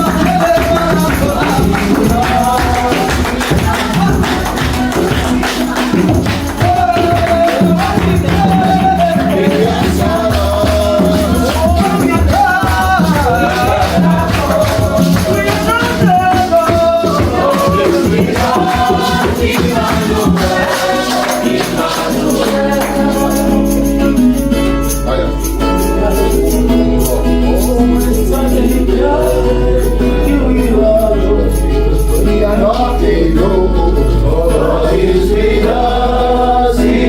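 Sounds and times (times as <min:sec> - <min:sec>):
tambourine: 0:00.0 - 0:28.8
band playing: 0:00.0 - 0:37.0
choir singing: 0:00.0 - 0:37.0.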